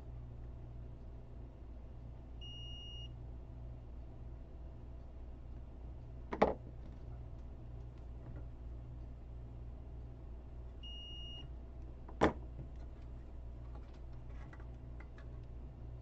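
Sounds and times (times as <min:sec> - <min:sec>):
steady low hum: 0:00.0 - 0:16.0
multimeter continuity beep: 0:02.4 - 0:03.1, 0:10.8 - 0:11.5.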